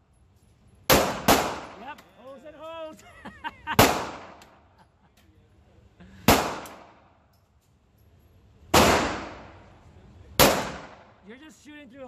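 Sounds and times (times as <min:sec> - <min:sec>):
pistol shots: 0:00.9 - 0:02.0, 0:03.8 - 0:04.6, 0:06.3 - 0:07.1, 0:08.7 - 0:09.6, 0:10.4 - 0:11.2.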